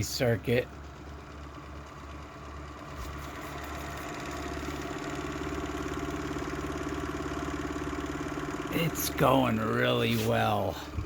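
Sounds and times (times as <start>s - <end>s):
motor rotor spinning scream: 3.1s - 11.0s.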